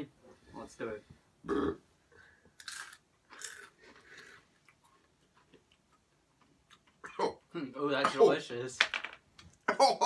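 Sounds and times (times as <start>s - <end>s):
chips crunching: 2.6s - 3.8s.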